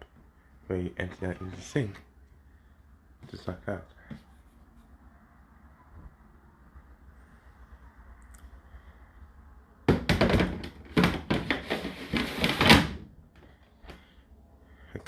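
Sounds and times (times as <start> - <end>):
plastic clunks and knocks: 9.9 - 13.0.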